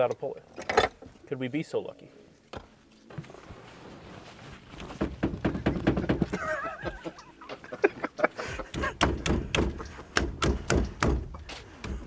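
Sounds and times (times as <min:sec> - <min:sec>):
steering wheel knocking thuds: 0:04.8 - 0:07.0, 0:08.7 - 0:12.0.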